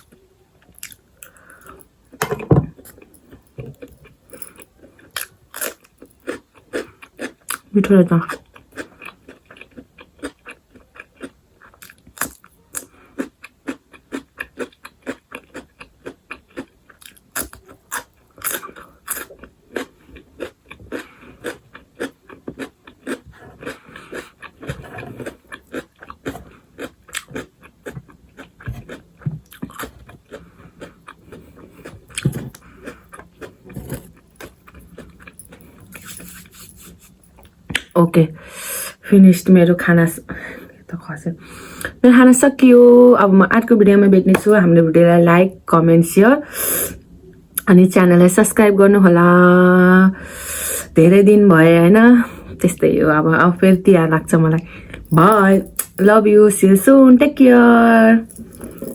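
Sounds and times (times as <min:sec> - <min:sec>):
chewing and crunching food: 0:00.0 - 0:38.0, 0:54.6 - 0:56.2.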